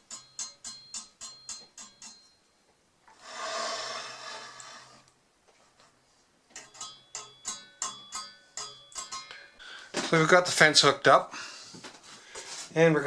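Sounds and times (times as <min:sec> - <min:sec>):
metal scraping across table saw: 0:03.1 - 0:05.1.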